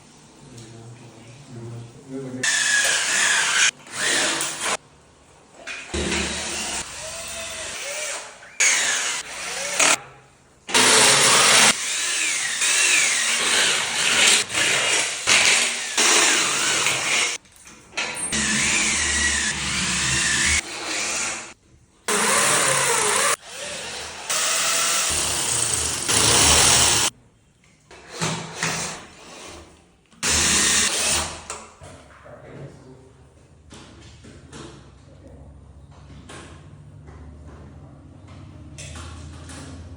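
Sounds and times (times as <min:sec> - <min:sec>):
power tools drilling and cutting metal: 0:02.4 - 0:04.8, 0:06.0 - 0:10.0, 0:10.7 - 0:17.4, 0:18.2 - 0:27.1, 0:30.2 - 0:31.5.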